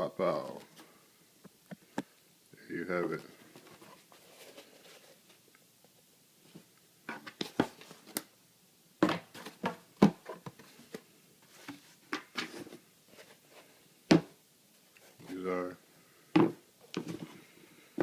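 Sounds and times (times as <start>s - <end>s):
shoe box rustling and scraping: 3.4s - 5.4s, 6.6s - 8.2s, 9.0s - 14.0s, 16.4s - 18.0s.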